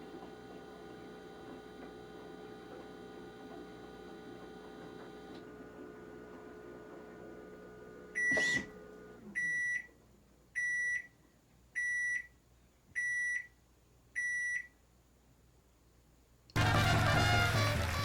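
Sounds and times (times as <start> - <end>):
washing machine motor hum: 0.0 - 9.8.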